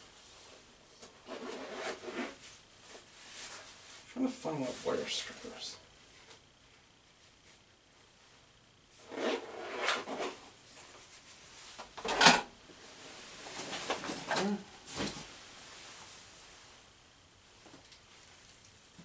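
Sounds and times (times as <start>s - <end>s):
tools clattering in a drawer: 12.0s - 12.5s.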